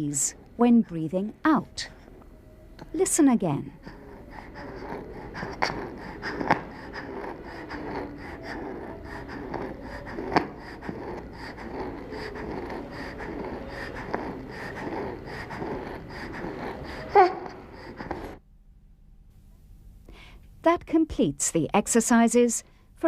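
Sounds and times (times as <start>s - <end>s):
child breathing with a wheeze: 3.7s - 18.4s, 20.1s - 20.4s.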